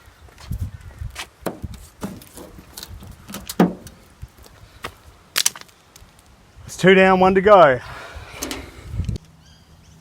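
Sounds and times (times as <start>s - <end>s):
handling knocks and clicks: 1.4s - 4.0s.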